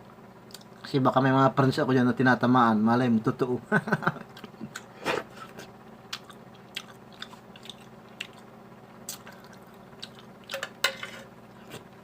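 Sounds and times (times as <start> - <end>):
person chewing food: 4.3 - 10.7.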